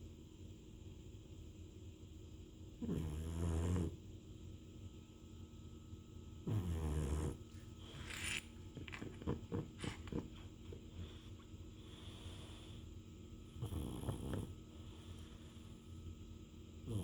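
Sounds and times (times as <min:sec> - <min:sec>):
dog snoring: 0:02.8 - 0:04.0, 0:06.4 - 0:10.4, 0:13.5 - 0:15.3.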